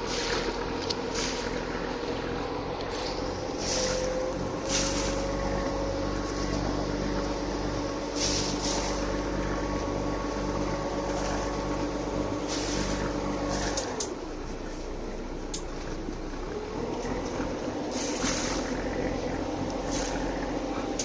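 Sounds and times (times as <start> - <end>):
boat engine running: 0.0 - 21.0.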